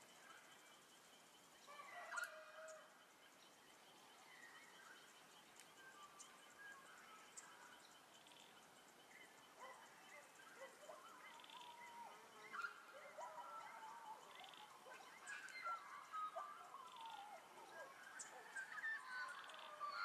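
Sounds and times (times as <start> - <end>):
background hiss: 0.0 - 20.0
birdsong warbling and chirping: 0.0 - 20.0.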